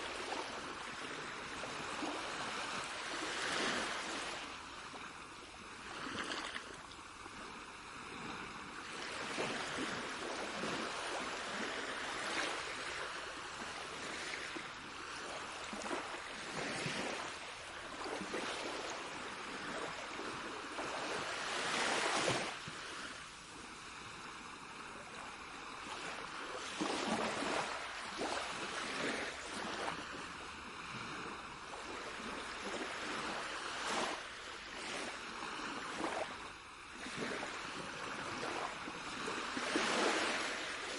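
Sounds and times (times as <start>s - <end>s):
sea waves washing in: 0.0s - 40.9s.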